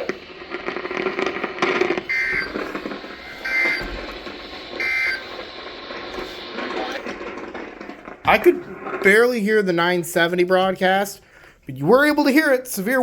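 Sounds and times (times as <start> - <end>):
warbling digital chirps over radio: 0.9 - 9.2.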